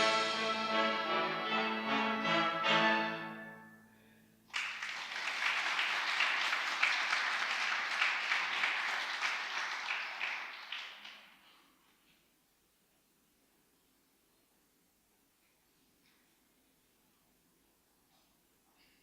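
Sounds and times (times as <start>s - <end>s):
orchestra chord: 0.0s - 4.0s
audience applause: 4.5s - 11.4s.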